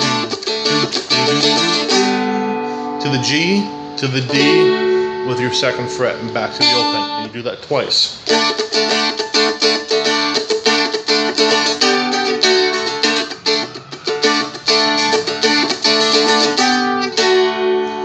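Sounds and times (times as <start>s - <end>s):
dulcimer strumming chords: 0.0s - 7.4s.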